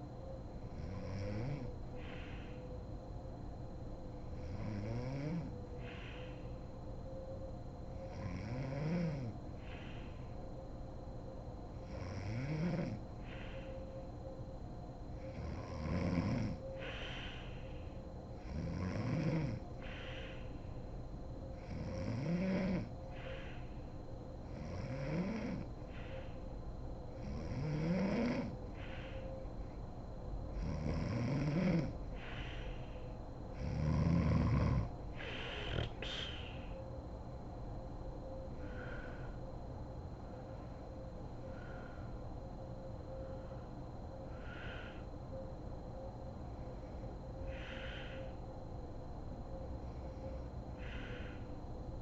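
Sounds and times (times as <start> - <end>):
woman snoring: 0.7 - 2.2, 4.4 - 5.6, 8.0 - 10.2, 11.8 - 13.5, 15.2 - 20.5, 21.6 - 23.6, 24.5 - 26.4, 27.2 - 29.2, 30.6 - 32.8, 33.5 - 36.8
short sharp breaths: 2.0 - 2.7, 5.8 - 6.6, 16.8 - 17.9, 19.8 - 20.6, 32.2 - 33.1, 35.2 - 36.8, 47.5 - 48.4.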